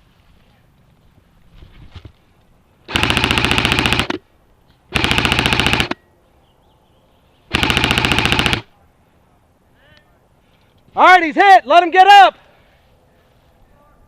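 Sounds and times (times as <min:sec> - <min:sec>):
airsoft gun automatic fire: 0:02.9 - 0:04.2, 0:04.9 - 0:06.0, 0:07.5 - 0:08.7.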